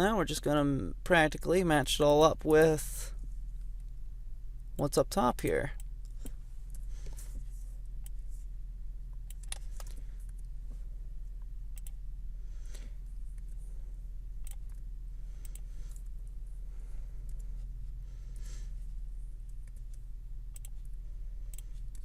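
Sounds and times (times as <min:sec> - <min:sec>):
steady low hum: 0:00.0 - 0:22.0
computer mouse clicks: 0:09.3 - 0:10.4, 0:11.8 - 0:12.0, 0:14.4 - 0:14.8, 0:19.5 - 0:20.9.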